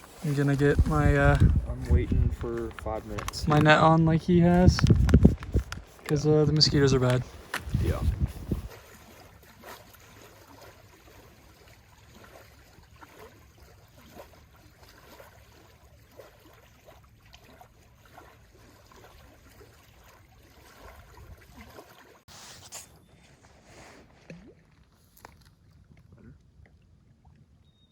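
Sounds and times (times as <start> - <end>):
wind rumble on microphone: 0.0 - 8.8, 21.0 - 21.6.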